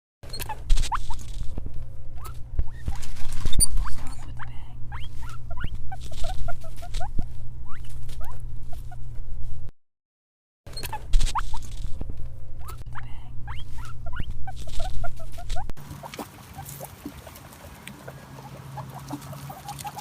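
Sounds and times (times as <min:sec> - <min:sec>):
guinea pig squealing: 0:00.3 - 0:01.4, 0:02.2 - 0:09.1, 0:10.7 - 0:11.8, 0:12.6 - 0:20.0
steady low hum: 0:00.3 - 0:09.7, 0:10.7 - 0:20.0.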